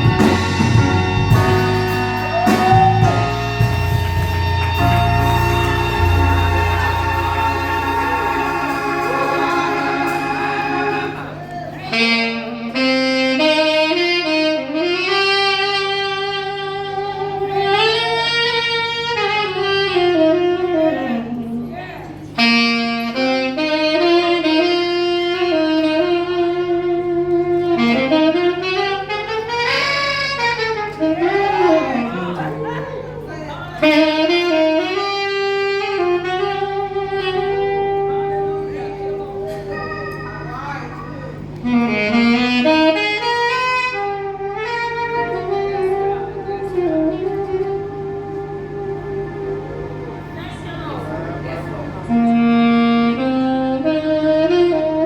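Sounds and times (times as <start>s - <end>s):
solo saxophone melody: 0.0s - 55.0s
solo melody of long held notes: 3.0s - 11.4s, 44.2s - 55.0s.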